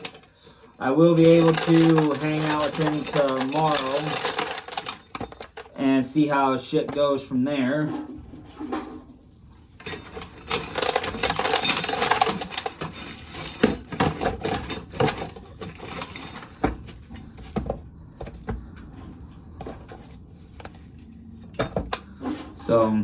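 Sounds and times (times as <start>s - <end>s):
corn kernels clattering: 0.0s - 5.9s, 10.0s - 16.6s.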